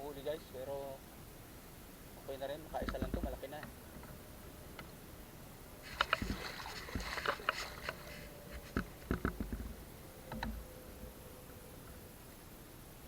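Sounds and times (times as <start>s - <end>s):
knocks and clicks: 2.8s - 3.4s, 8.6s - 10.6s
water splashing: 5.8s - 9.9s.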